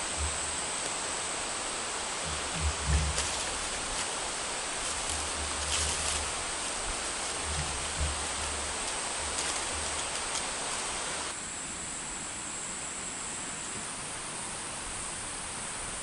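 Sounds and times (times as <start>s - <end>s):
faint low rumble: 0.0s - 11.3s
even hiss: 0.0s - 11.8s
high insect drone: 0.0s - 16.0s
soft rustles: 2.2s - 11.3s.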